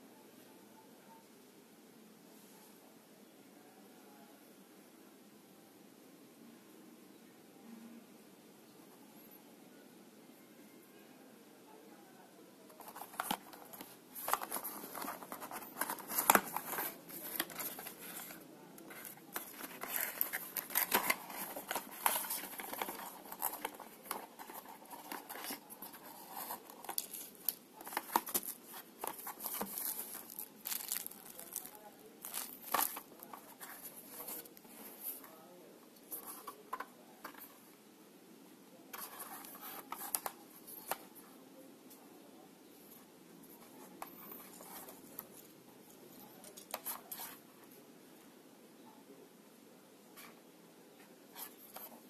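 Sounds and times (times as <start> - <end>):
packaging crinkling and tearing: 19.4 - 33.1.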